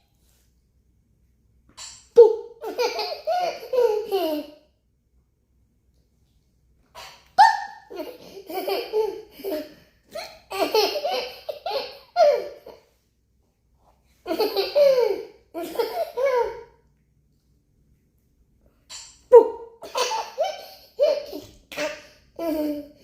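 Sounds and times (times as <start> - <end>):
toddler laughing: 2.2 - 4.6, 7.0 - 12.8, 14.3 - 16.8, 19.3 - 23.0.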